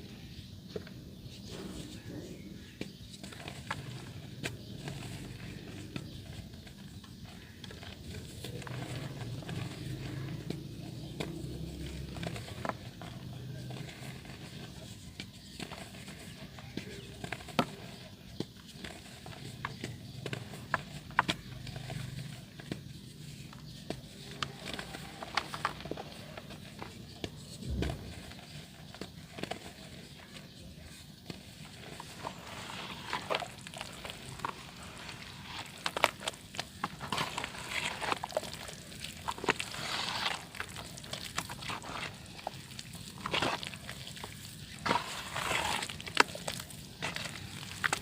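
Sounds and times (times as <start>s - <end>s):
wet dirt crackling and snapping: 1.5s - 48.0s
dirt crumbling into water: 31.8s - 48.0s.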